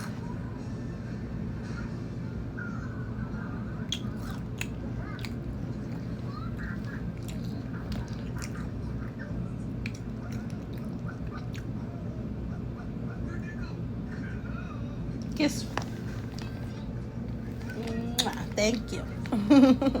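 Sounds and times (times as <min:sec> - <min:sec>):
steady low hum: 0:00.0 - 0:20.0
chewing crunchy chips: 0:03.9 - 0:11.8.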